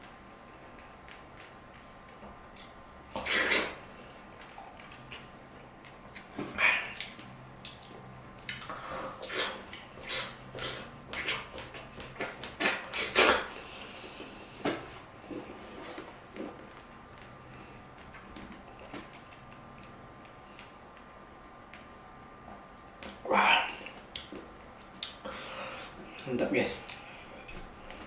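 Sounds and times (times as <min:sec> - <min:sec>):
wet chewing and slurping: 0:02.5 - 0:17.3.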